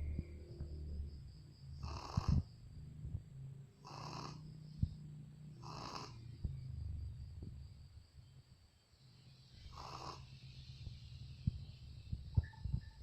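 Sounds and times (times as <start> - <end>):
steady low hum: 0.0 - 13.0
dog snoring: 1.8 - 2.5, 3.8 - 4.8, 5.6 - 6.3, 9.7 - 10.5.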